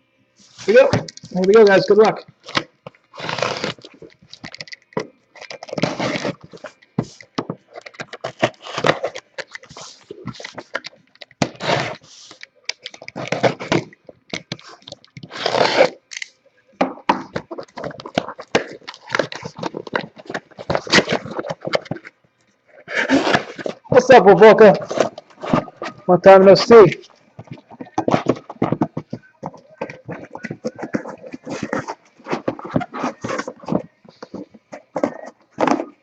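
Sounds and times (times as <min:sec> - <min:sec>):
cardboard scraping and crackling: 0:00.6 - 0:16.0, 0:17.1 - 0:22.1, 0:22.9 - 0:36.0
packing tape tearing: 0:00.6 - 0:16.3, 0:17.2 - 0:22.1, 0:23.0 - 0:23.9.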